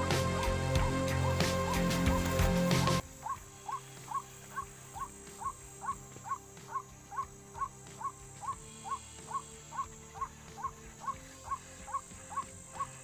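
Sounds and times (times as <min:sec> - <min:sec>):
waterhen calling: 0:01.0 - 0:13.0.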